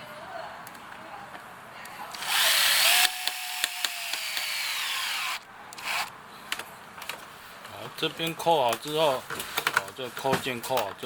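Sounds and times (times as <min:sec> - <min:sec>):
power drill driving screws: 0:02.2 - 0:06.1.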